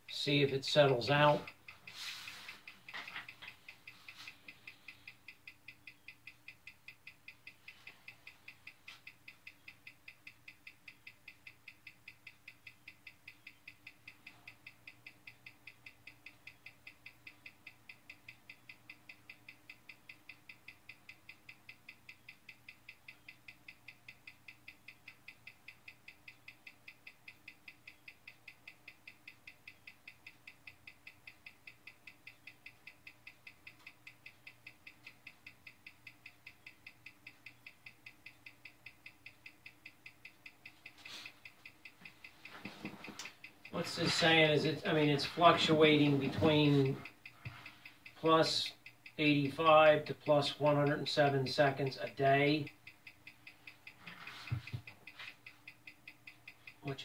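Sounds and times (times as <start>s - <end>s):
watch ticking: 0.0s - 57.0s.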